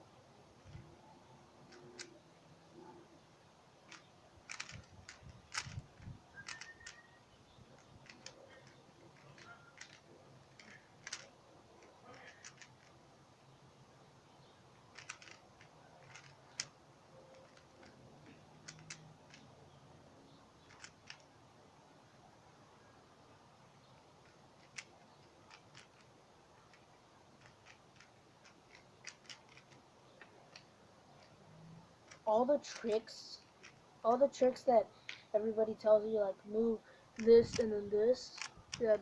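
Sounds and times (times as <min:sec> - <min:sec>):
plastic puzzle cube clicking: 0:01.6 - 0:02.2, 0:03.8 - 0:13.0, 0:14.8 - 0:19.8, 0:20.6 - 0:21.4, 0:24.2 - 0:35.3, 0:37.2 - 0:39.0.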